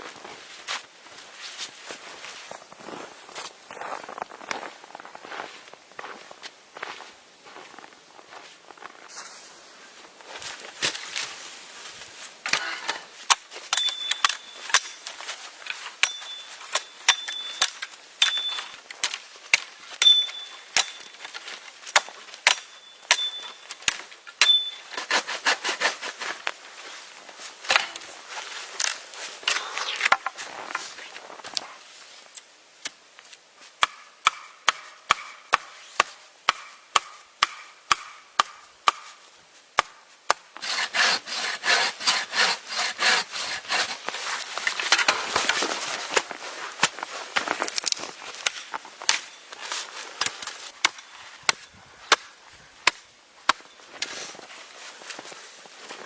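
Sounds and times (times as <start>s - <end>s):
axe chopping wood: 16.0s - 25.8s, 33.8s - 39.2s, 39.8s - 41.8s, 48.4s - 49.4s, 50.2s - 53.7s.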